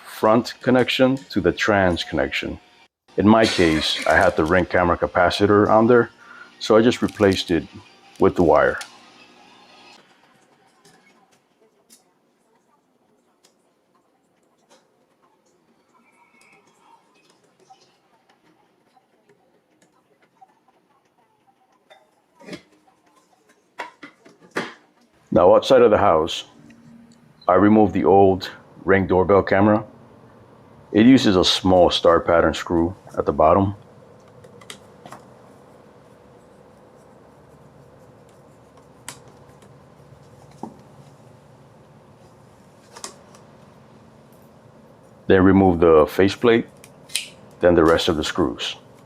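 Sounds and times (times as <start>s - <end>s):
low steady background hum: 10.6s - 49.0s.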